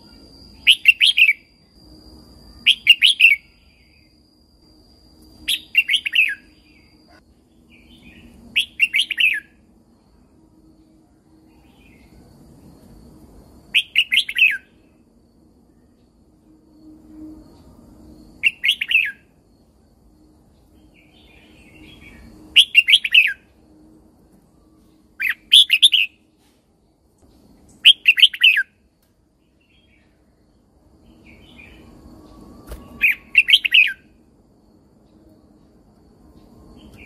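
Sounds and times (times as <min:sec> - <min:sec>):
faint low hum: 0:00.0 - 0:37.0
bird warbling song: 0:31.1 - 0:34.1.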